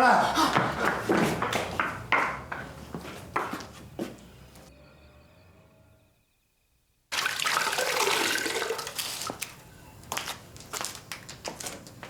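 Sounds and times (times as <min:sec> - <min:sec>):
water pouring and splashing: 0:07.1 - 0:09.5.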